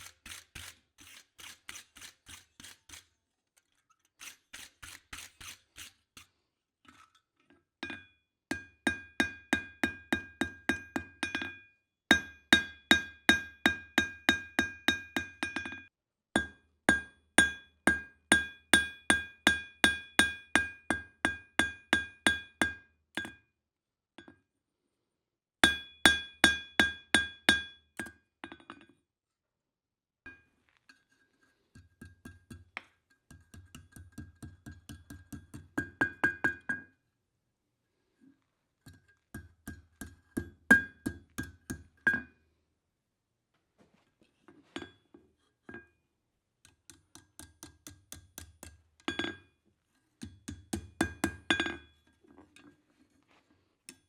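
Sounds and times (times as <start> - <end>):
hammer striking steel on anvil: 7.9 - 15.8, 16.4 - 23.3, 25.6 - 28.1, 39.4 - 42.3, 50.2 - 51.9.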